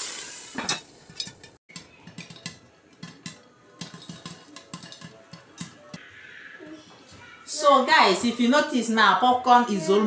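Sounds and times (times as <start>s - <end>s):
popcorn popping in a pot: 0.0s - 6.0s.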